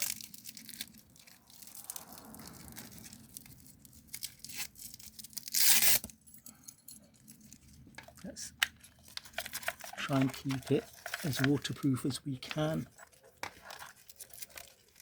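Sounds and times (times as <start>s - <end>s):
velcro strap ripping: 0.0s - 3.5s, 4.1s - 6.1s
handling rustle and clicks: 0.0s - 15.0s.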